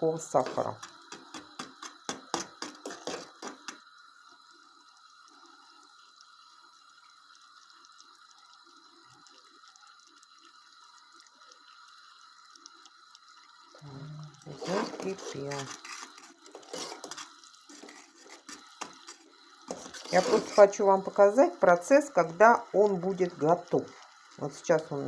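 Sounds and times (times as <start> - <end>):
sugar syrup bubbling: 0.0 - 25.0.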